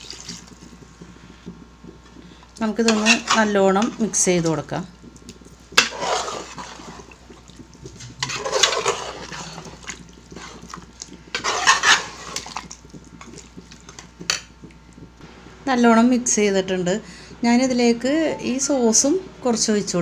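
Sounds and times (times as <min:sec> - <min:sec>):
spoon stirring wet gravy: 0:00.0 - 0:14.7
spoon scraping a pan: 0:02.7 - 0:04.2, 0:05.7 - 0:07.2, 0:08.0 - 0:14.4.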